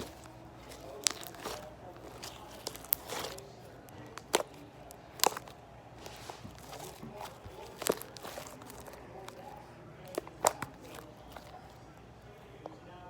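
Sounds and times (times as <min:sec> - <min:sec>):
slime crackling: 0:00.0 - 0:12.6.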